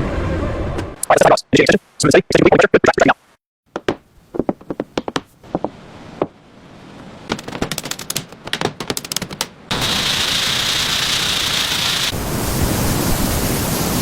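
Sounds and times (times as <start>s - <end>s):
sharp clicks and knocks: 3.8s - 5.7s, 7.3s - 9.6s
hiss: 9.7s - 14.0s.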